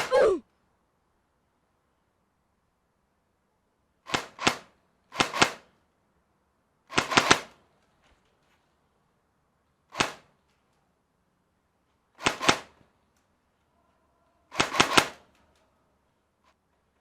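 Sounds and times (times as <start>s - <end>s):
airsoft gun shots: 4.1s - 5.6s, 6.9s - 7.5s, 9.9s - 10.3s, 12.2s - 12.8s, 14.5s - 15.2s.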